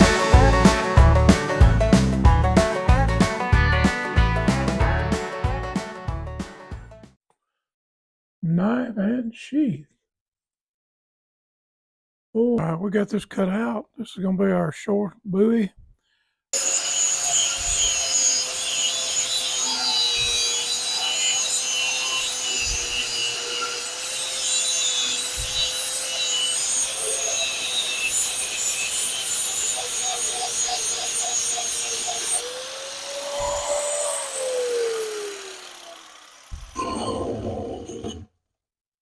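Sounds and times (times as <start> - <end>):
power grinder on steel: 16.6 - 38.3.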